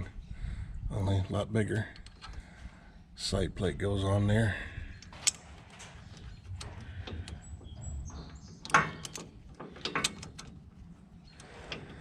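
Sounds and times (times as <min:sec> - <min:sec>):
metallic clicks of chain plate: 0:08.4 - 0:10.7.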